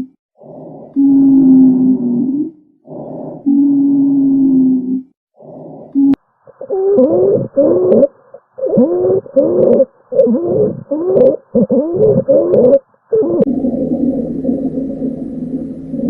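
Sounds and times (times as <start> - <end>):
squeaky pitched breath sounds: 5.8 - 15.2.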